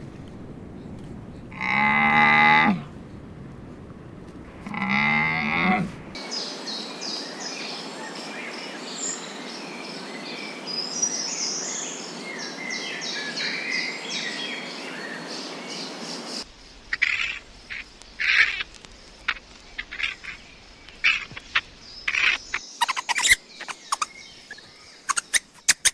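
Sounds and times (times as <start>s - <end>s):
birds chirping: 0.0s - 25.9s
cow mooing: 1.5s - 2.9s, 4.6s - 6.2s
steady hiss: 15.3s - 25.1s
sharp chirping calls and clicks: 16.8s - 25.9s.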